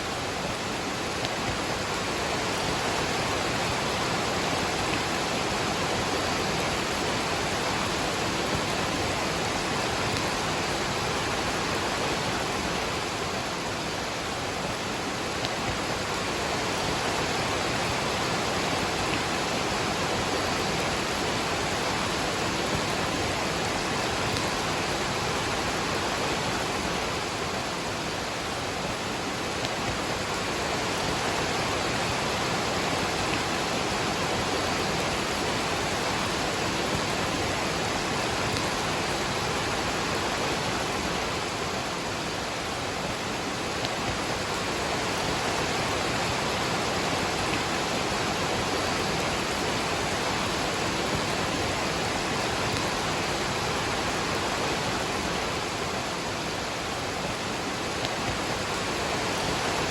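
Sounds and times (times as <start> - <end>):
rain falling: 0.0 - 59.9
waterfall rushing: 0.0 - 59.9.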